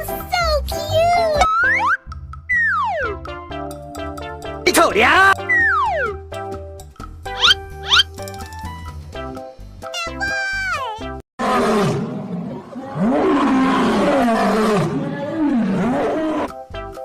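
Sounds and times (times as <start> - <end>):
cheerful children's music: 0.0 - 11.2
animal roar sound effect: 11.4 - 16.5.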